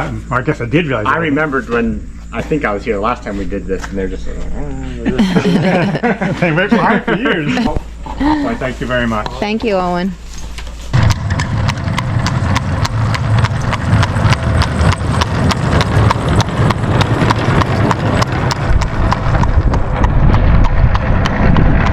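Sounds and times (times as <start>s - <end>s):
steady low rumble: 0.0s - 21.9s
horse hooves clip-clopping: 8.8s - 21.9s.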